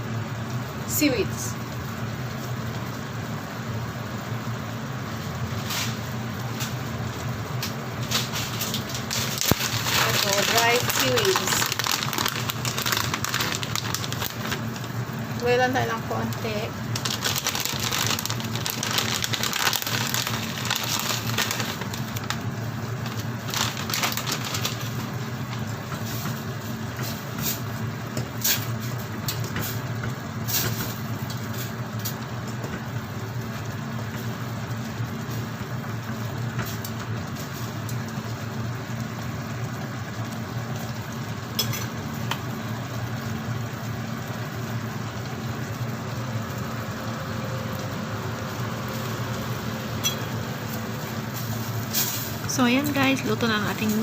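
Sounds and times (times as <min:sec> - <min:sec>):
cooking pot humming: 0:00.0 - 0:54.0
dried seaweed crackling and rustling: 0:08.0 - 0:26.1.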